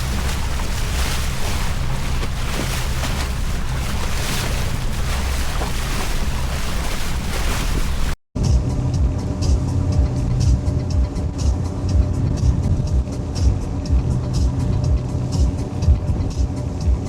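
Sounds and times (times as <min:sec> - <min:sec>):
outboard motors droning: 0:00.0 - 0:08.2
rush of wind and water: 0:00.0 - 0:08.2.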